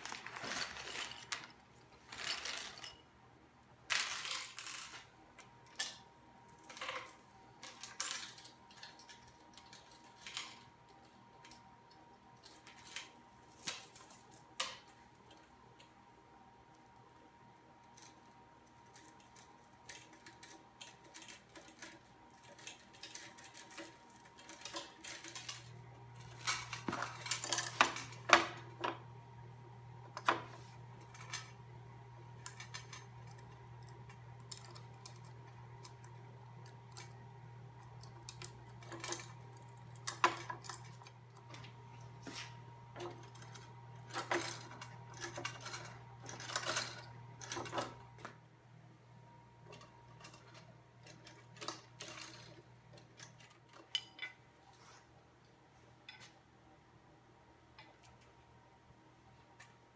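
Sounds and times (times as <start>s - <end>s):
metal parts clinking: 0.0s - 3.1s, 18.0s - 28.8s, 32.4s - 36.0s, 43.0s - 48.1s.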